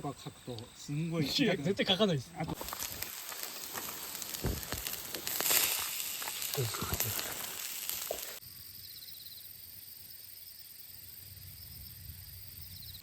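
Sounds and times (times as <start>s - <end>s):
insects chirping: 0.0s - 13.0s
food sizzling over campfire: 0.8s - 8.8s.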